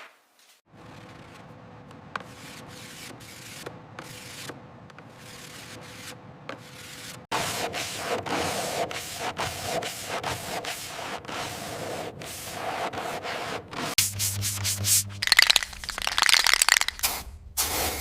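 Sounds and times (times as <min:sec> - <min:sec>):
rubbing strokes on a surface: 0:06.7 - 0:15.1.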